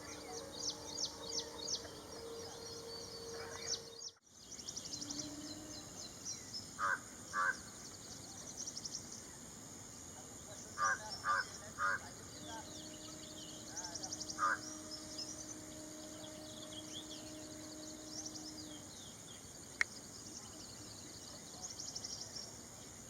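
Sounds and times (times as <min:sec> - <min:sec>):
bird harsh lower call: 0:00.0 - 0:04.2, 0:10.8 - 0:19.2
bird high thin notes: 0:00.0 - 0:04.2, 0:12.3 - 0:19.5.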